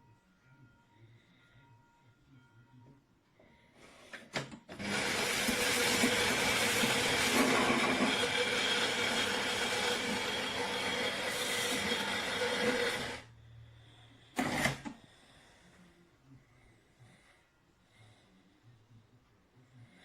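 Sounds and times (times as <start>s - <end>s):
espresso machine motor whirring: 4.7s - 13.3s, 14.4s - 14.9s.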